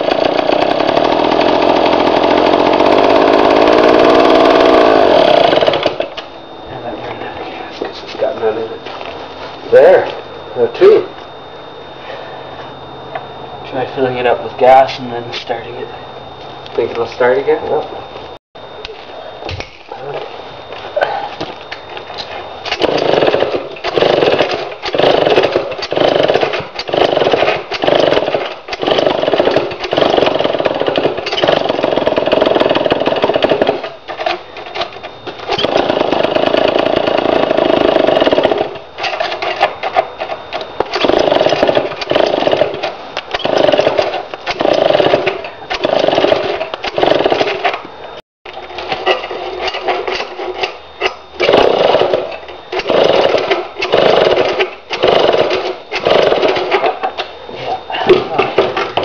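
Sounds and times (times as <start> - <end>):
chainsaw being pull-started: 0.0 - 6.1, 22.7 - 34.3, 35.5 - 39.6, 40.9 - 47.8, 51.4 - 57.0.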